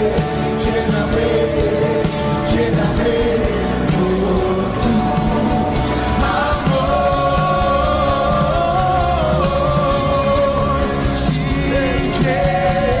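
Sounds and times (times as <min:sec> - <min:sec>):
full band accompaniment: 0:00.0 - 0:13.0.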